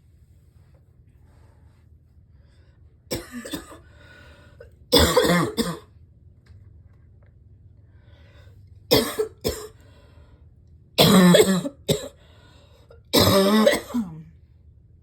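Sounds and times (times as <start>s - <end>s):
person coughing hard: 3.1s - 3.9s, 4.9s - 5.9s, 8.9s - 9.8s, 11.0s - 12.2s, 13.1s - 14.2s.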